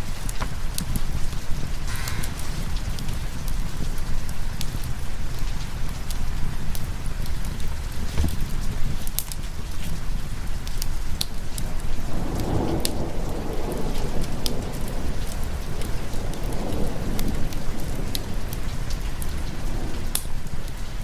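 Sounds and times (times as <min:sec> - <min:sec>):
steady rain: 0:00.0 - 0:21.0
thunder rolling: 0:11.7 - 0:20.9.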